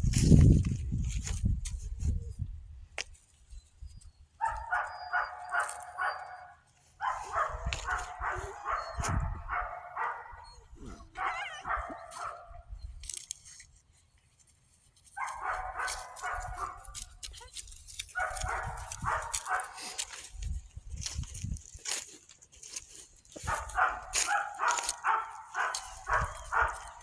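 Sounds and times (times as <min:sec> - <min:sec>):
puppies yapping: 0:04.3 - 0:12.7, 0:18.1 - 0:20.3, 0:23.4 - 0:27.0.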